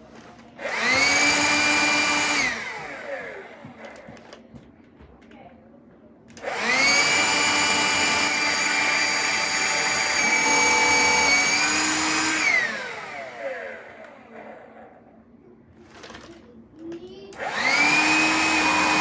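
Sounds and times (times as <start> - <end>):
vacuum cleaner motor whine: 0.3 - 4.4, 6.4 - 15.0, 17.3 - 19.0.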